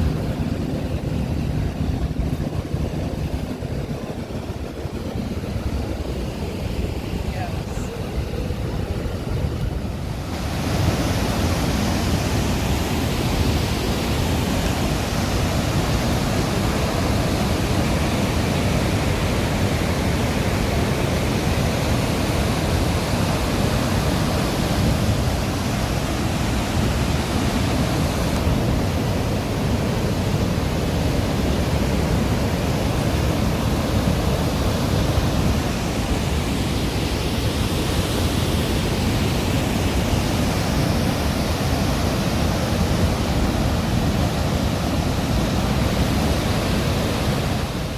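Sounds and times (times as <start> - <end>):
waterfall rushing: 9.8 - 47.9.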